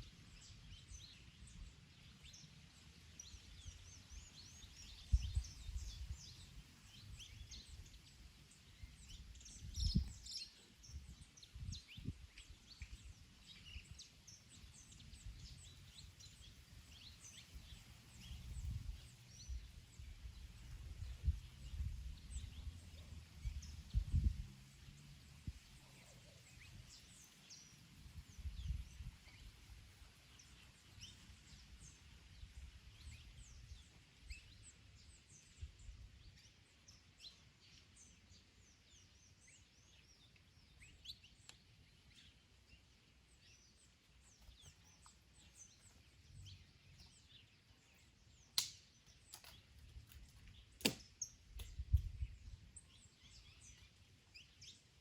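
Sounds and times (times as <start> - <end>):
songbirds chirping: 0.0 - 55.0
wind gusts on microphone: 4.8 - 8.0, 8.8 - 13.2, 17.6 - 25.8, 28.0 - 29.8, 51.6 - 52.7
sharp clicks: 48.6 - 51.8.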